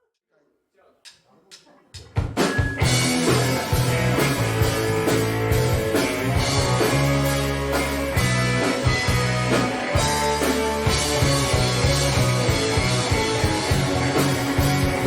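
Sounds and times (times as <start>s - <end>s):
drum kit: 1.1s - 15.0s
electric guitar: 2.4s - 15.0s.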